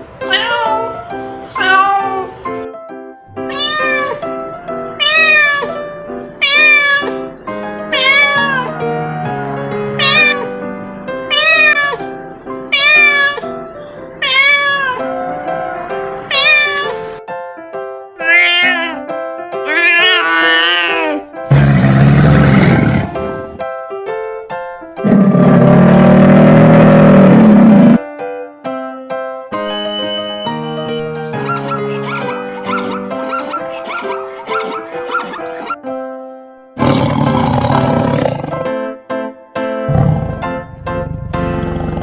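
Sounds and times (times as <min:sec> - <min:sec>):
background music: 0:00.0 - 0:42.0
cat meowing: 0:00.3 - 0:01.0, 0:01.6 - 0:02.4, 0:03.4 - 0:05.8, 0:06.4 - 0:07.2, 0:07.9 - 0:10.5, 0:11.3 - 0:12.0, 0:12.7 - 0:13.5, 0:14.1 - 0:15.6, 0:16.3 - 0:17.0, 0:18.2 - 0:19.0, 0:19.6 - 0:21.3.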